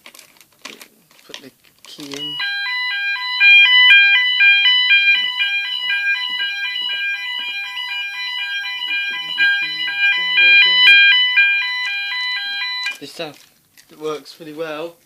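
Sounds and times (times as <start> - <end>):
two-tone electronic alarm warble: 2.1 - 13.0.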